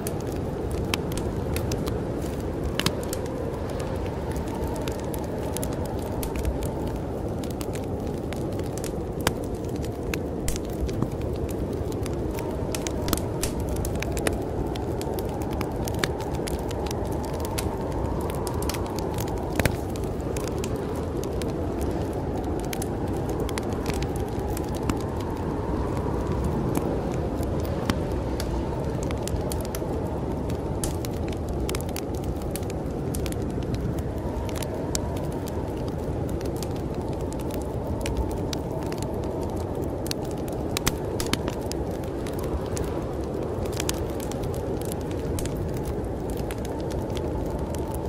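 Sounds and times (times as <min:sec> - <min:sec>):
storm wind howling: 0:00.0 - 0:48.0
wood fire crackling and popping: 0:00.0 - 0:48.0.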